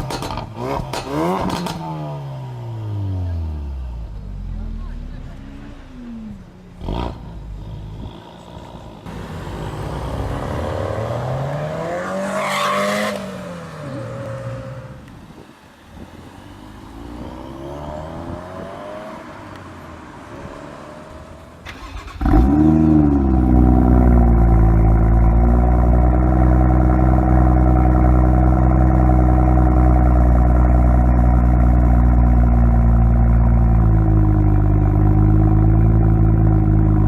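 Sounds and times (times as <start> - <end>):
sports car engine accelerating: 0.0 - 15.3, 16.2 - 37.0
loud engine revving: 4.8 - 14.9, 21.7 - 37.0.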